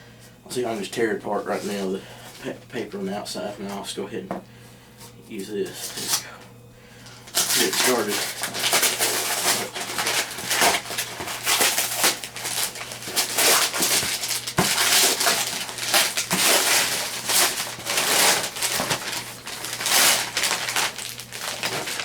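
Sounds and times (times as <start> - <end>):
paper tearing and crumpling: 7.3 - 22.0.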